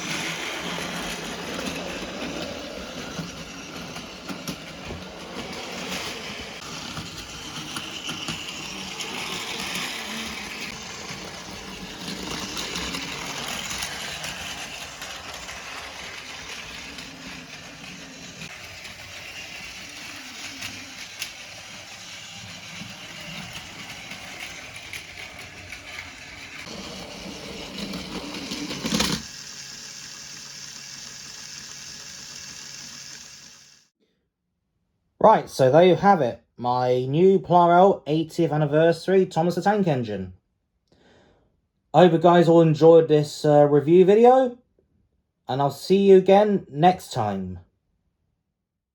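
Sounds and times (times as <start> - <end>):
toy train motor whirring: 0.0 - 33.9.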